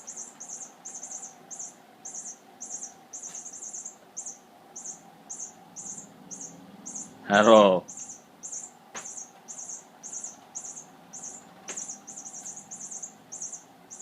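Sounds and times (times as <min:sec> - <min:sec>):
ceiling fan hum: 0:00.0 - 0:14.0
toy high-pitched chirps: 0:07.9 - 0:14.0.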